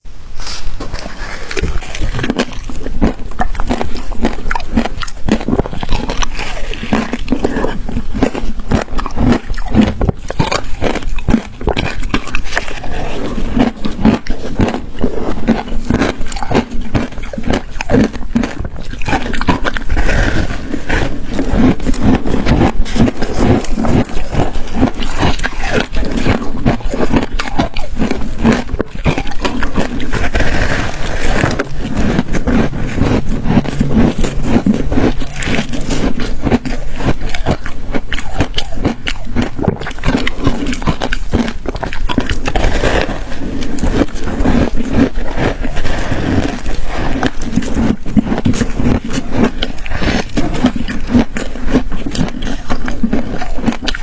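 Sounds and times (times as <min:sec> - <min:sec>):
ice being chewed: 0:00.8 - 0:54.0.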